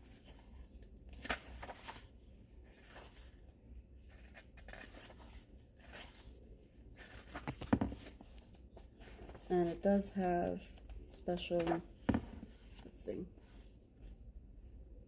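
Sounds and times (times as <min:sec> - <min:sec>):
book pages rustling: 0:00.0 - 0:03.5, 0:04.1 - 0:13.8.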